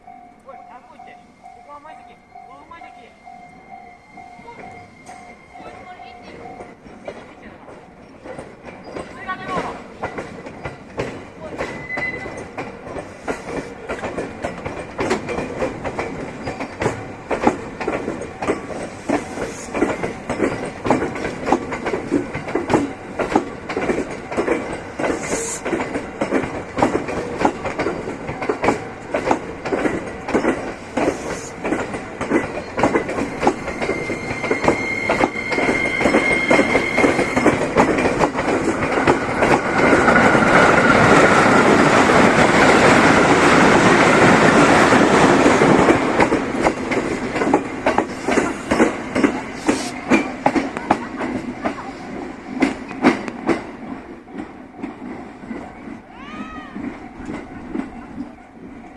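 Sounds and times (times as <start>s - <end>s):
train wheels clicking over rail joints: 0.0s - 58.9s
thin high squeal: 33.6s - 37.5s.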